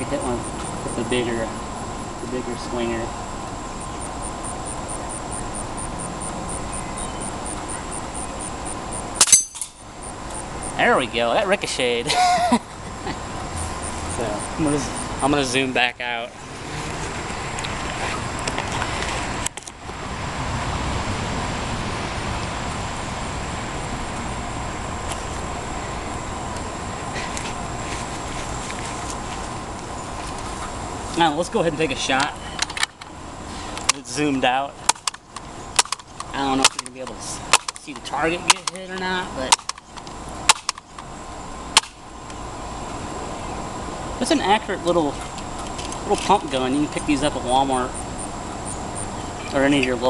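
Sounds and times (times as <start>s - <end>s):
distant traffic rumble: 0.0s - 50.0s
faint high chirp: 6.5s - 8.0s.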